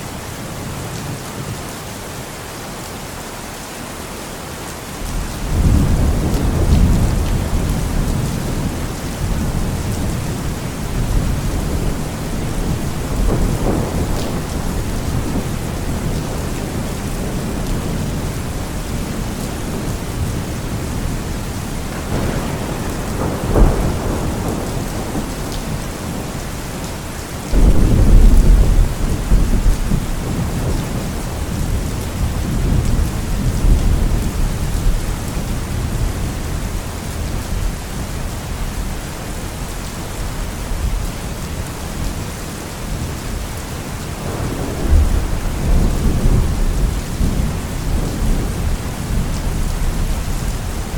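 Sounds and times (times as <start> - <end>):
heavy rain: 0.0 - 50.9
loud thunderclap: 5.0 - 36.2, 44.2 - 50.9
thunder rumbling: 5.0 - 42.2, 42.8 - 50.9.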